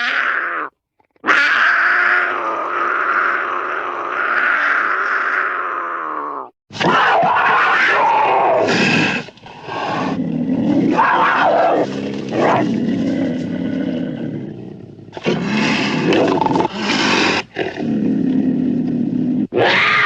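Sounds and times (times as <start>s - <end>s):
cougar calling harshly: 0.0s - 8.7s, 19.5s - 20.0s.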